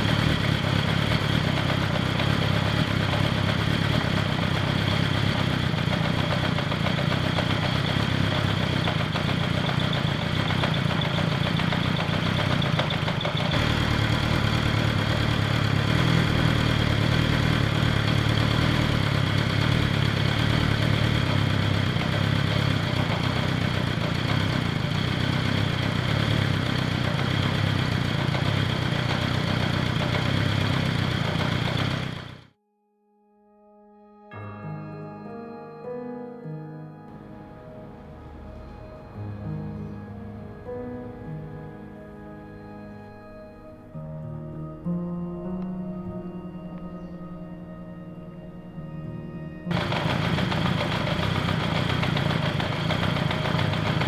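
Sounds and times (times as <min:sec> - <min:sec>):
motorcycle engine idling: 0:00.0 - 0:32.5, 0:37.1 - 0:42.3, 0:49.7 - 0:54.0.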